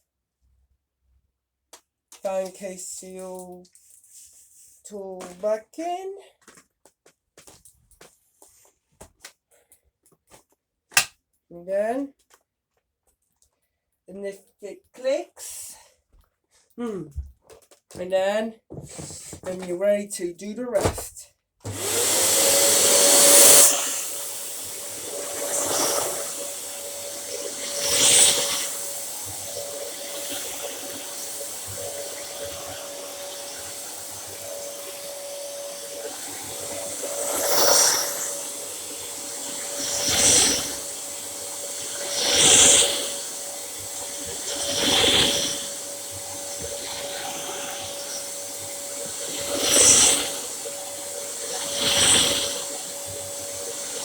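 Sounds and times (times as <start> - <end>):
vacuum cleaner motor whine: 21.6 - 54.0.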